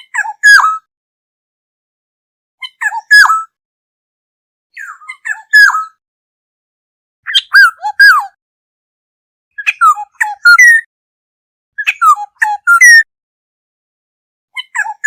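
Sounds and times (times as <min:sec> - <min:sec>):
bird whistling calls: 0:07.3 - 0:08.3, 0:11.8 - 0:13.1.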